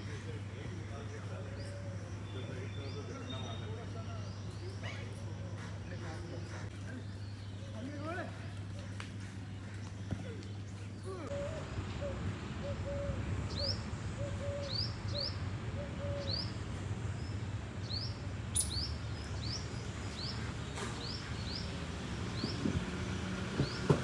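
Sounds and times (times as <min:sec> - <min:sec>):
high rising bird chirp: 0:17.8 - 0:20.4
lower-pitched bird calls: 0:17.9 - 0:21.8.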